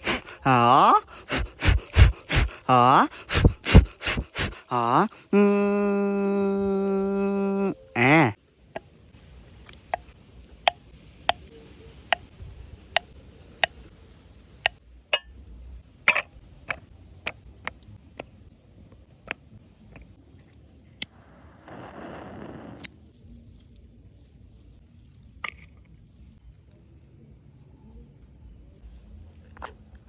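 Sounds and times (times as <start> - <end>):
hissing noise: 0.0 - 5.3.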